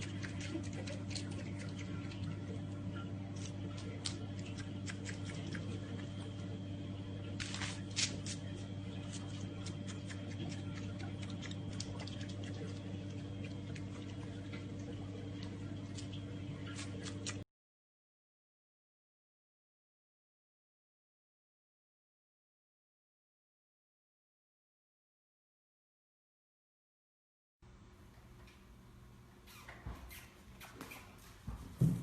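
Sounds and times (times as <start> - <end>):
steady low hum: 0.0 - 17.4, 27.6 - 32.0.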